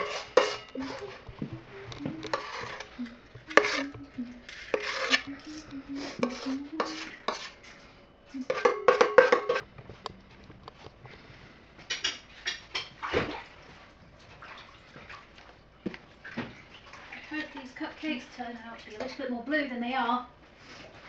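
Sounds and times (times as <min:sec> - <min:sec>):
spoon scraping mixing bowl: 0:00.0 - 0:09.7.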